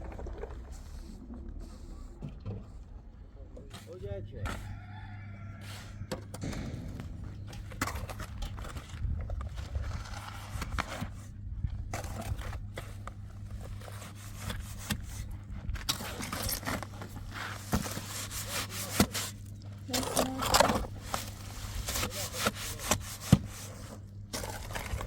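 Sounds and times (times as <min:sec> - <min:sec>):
steady low hum: 0:00.0 - 0:25.0
sharp knocks: 0:06.4 - 0:08.7
scraping and rubbing: 0:06.4 - 0:11.4, 0:12.0 - 0:25.0.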